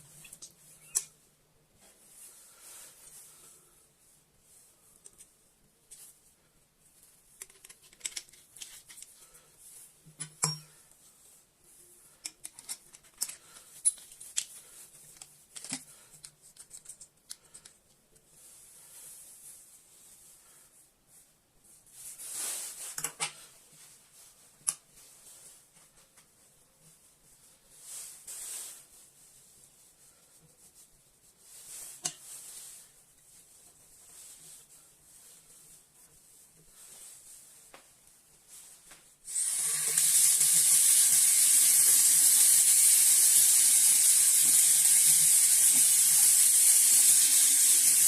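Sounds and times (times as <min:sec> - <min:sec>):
small clicks taps and scrapes: 0:07.4 - 0:09.2, 0:12.2 - 0:18.3, 0:23.0 - 0:23.4, 0:24.6 - 0:24.9
rush of hissing: 0:39.3 - 0:48.0.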